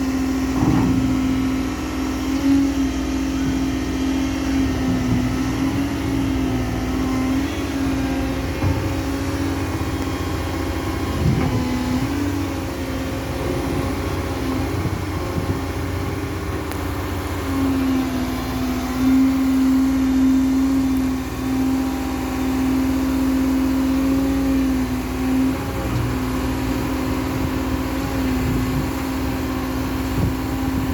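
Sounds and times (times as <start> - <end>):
excavator diesel engine running: 0.0 - 30.9
steady whining tone: 0.0 - 30.9.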